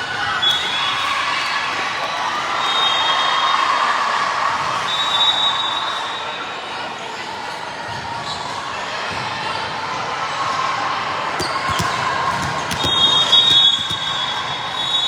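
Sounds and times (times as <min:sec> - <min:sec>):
basketball bouncing on hardwood: 0:11.4 - 0:14.4.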